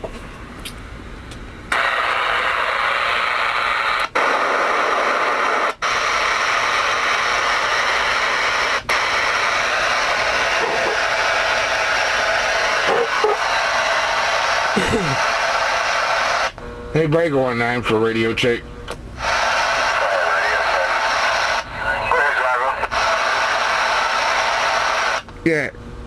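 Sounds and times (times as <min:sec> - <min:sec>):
radio static hiss: 0:01.7 - 0:18.6, 0:19.2 - 0:25.7.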